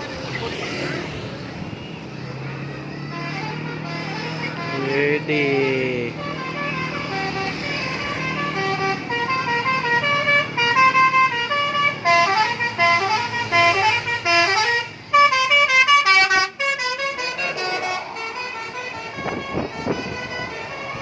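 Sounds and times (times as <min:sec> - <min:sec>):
musical air horn tune: 0:08.5 - 0:21.0.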